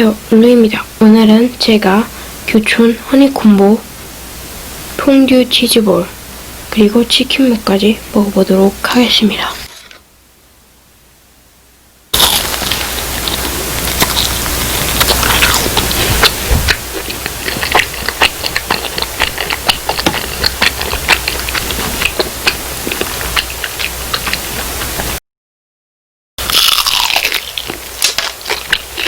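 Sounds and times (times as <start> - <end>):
food packaging crinkling: 12.2 - 25.2, 26.4 - 29.0.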